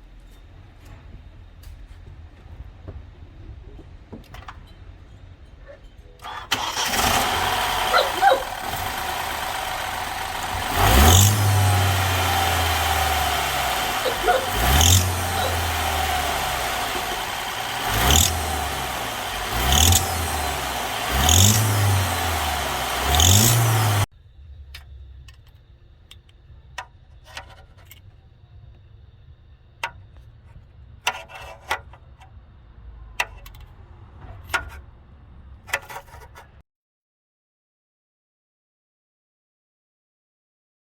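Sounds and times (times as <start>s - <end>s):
exhaust rattle: 6.3s - 24.1s
car engine revving: 6.5s - 24.1s.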